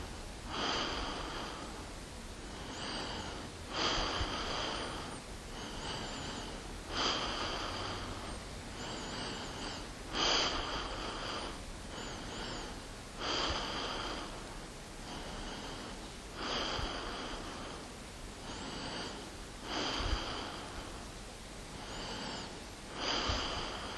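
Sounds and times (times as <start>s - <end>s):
person breathing: 0.0s - 23.9s.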